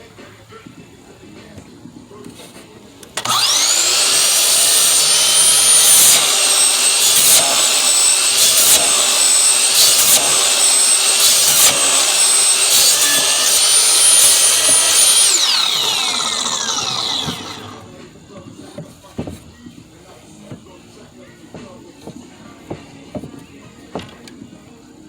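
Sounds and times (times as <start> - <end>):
saw blade coasting down: 3.2 - 17.9
saw cutting wood: 3.2 - 17.9.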